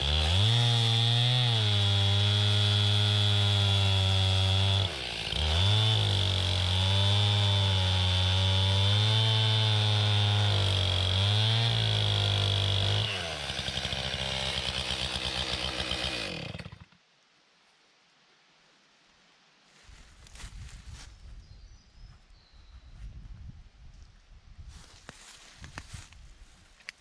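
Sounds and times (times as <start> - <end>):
chainsaw running: 0.0 - 17.0.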